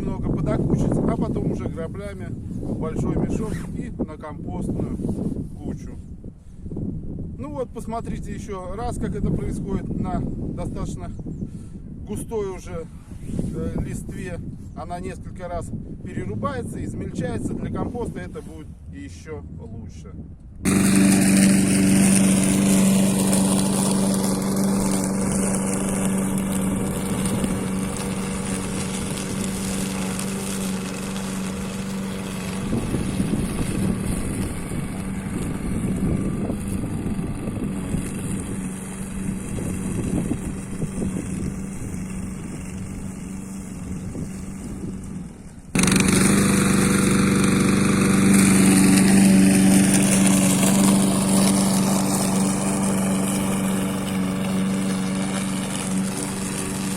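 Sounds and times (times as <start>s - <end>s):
lawn mower chopping leaves: 20.6s - 56.9s.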